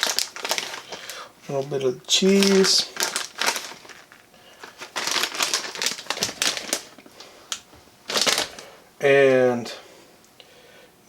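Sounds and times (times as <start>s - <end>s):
cheese crinkling on tortilla: 0.0s - 8.8s.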